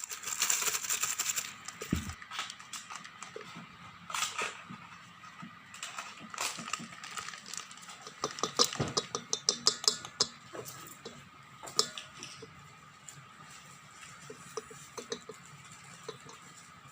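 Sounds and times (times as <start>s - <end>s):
utensils and dishes clinking: 7.5s - 12.6s, 13.5s - 16.9s.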